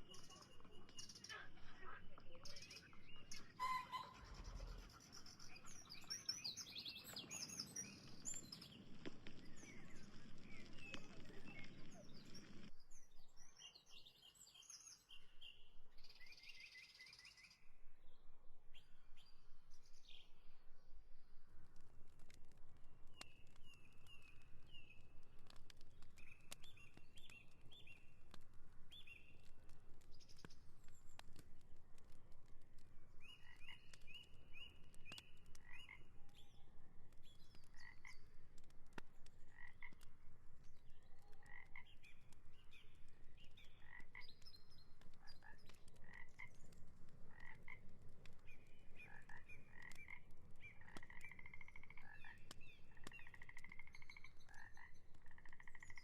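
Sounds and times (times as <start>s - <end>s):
birds chirping: 0.0s - 56.0s
frogs croaking: 37.8s - 38.4s, 53.2s - 55.9s.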